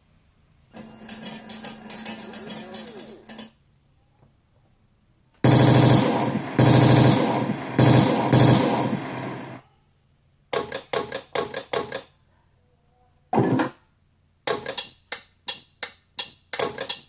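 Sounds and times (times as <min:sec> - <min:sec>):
machine-gun sound effects: 0:05.5 - 0:09.6.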